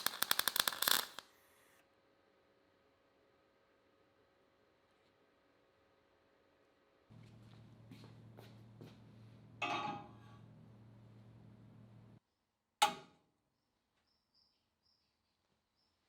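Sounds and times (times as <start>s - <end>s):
low electrical hum: 2.1s - 12.2s.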